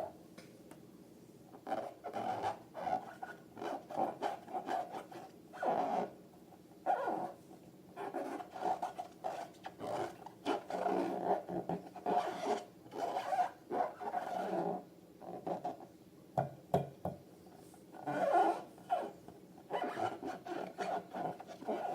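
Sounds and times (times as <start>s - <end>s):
rubber balloons squeaking: 6.9s - 7.4s, 8.0s - 14.6s, 18.0s - 21.9s.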